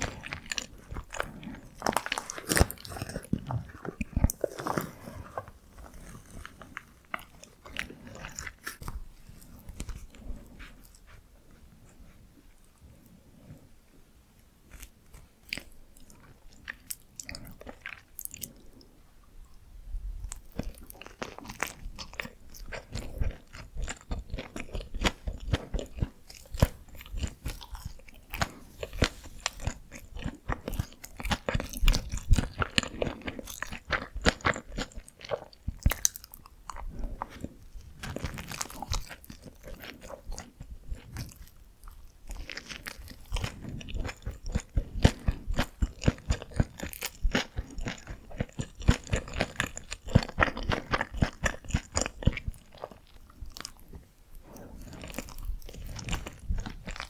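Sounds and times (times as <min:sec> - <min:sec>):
chewing mouth clicks and smacks: 0:14.7 - 0:19.6, 0:20.2 - 0:57.0.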